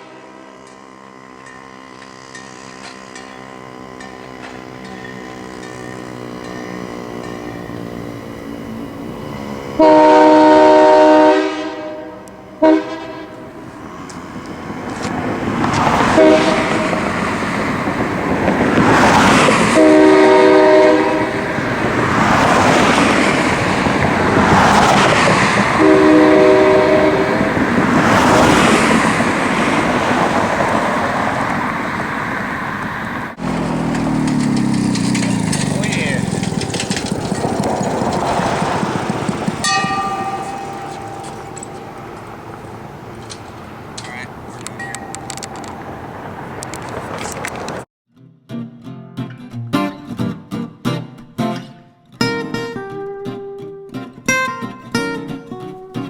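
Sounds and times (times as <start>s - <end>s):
air train horn blasts: 0.0s - 36.7s, 39.6s - 45.3s
rushing noise: 5.3s - 47.8s.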